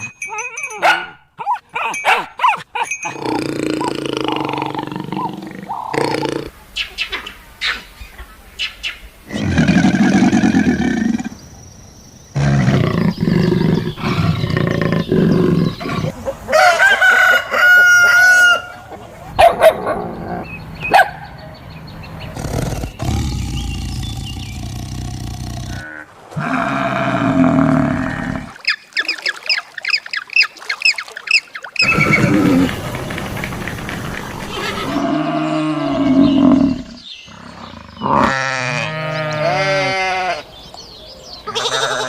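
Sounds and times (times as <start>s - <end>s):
farm animal calls: 34.4s - 40.5s, 41.4s - 42.0s.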